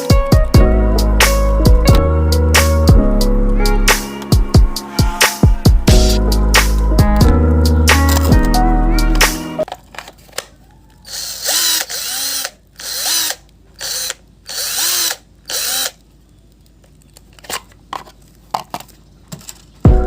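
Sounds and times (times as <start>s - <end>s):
cordless drill motor bursts: 11.1s - 16.0s.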